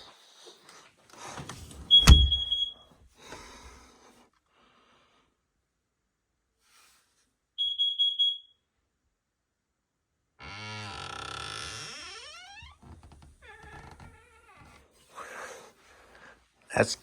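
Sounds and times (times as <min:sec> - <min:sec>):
smoke alarm beeping: 0:01.9 - 0:02.8, 0:07.6 - 0:08.6.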